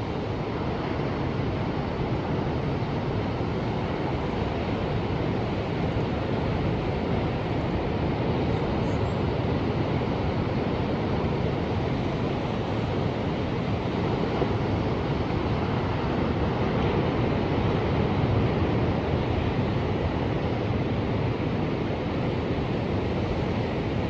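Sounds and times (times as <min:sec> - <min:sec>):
ocean surf rushing: 0:00.0 - 0:24.0.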